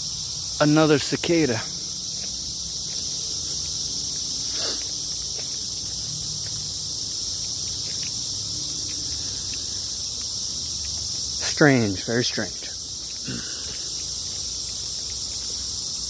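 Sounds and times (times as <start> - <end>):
cicadas buzzing: 0.0 - 16.0.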